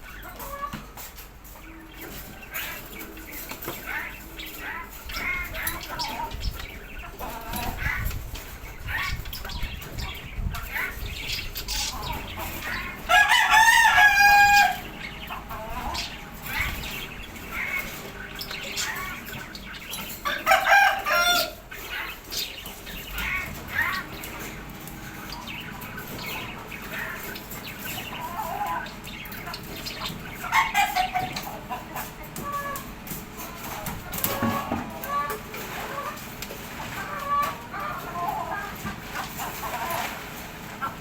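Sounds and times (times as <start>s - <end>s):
rooster crowing: 13.0s - 15.0s, 20.3s - 21.6s.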